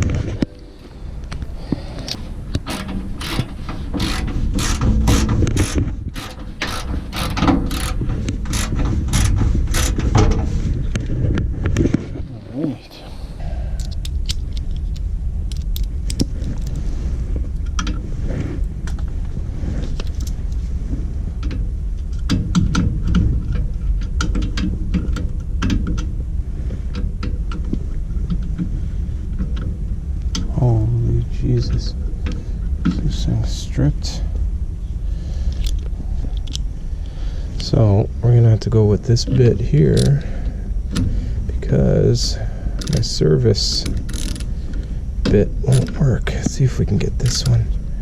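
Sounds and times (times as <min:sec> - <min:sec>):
low rumble: 0:00.0 - 0:48.0
hand tool clicking: 0:02.0 - 0:10.0.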